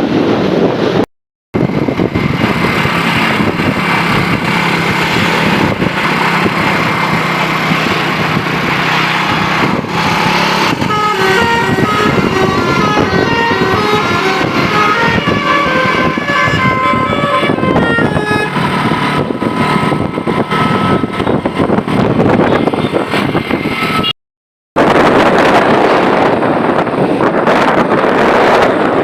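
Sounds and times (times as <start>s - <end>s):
vehicle noise: 0.0s - 24.2s, 24.8s - 29.0s
bus horn playing a melody: 9.3s - 23.0s.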